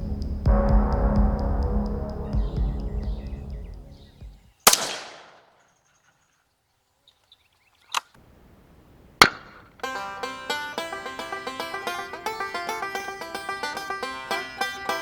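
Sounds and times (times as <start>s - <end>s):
background music: 0.0s - 4.5s, 9.9s - 15.0s
rifle shots: 4.7s - 5.6s.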